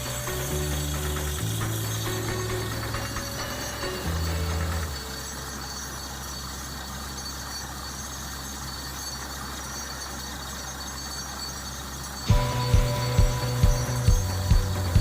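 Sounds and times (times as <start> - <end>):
rhythmic knocking: 0.0 - 6.6, 11.5 - 15.0
drilling rig engine humming: 0.0 - 15.0.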